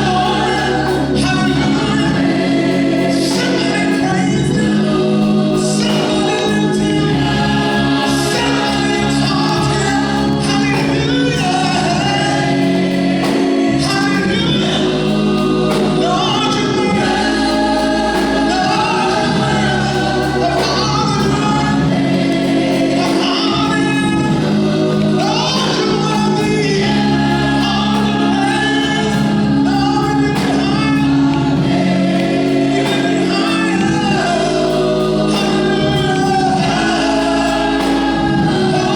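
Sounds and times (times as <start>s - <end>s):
gospel choir singing: 0.0s - 38.9s
instrumental accompaniment: 0.0s - 38.9s.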